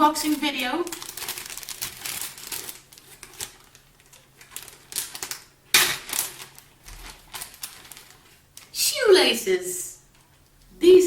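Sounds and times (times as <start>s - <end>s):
packaging crackling and rustling: 0.0s - 8.7s.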